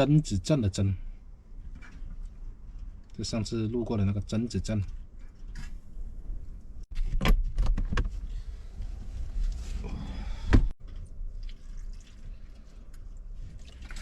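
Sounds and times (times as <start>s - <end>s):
knocks and clatters of handling: 1.6s - 3.2s.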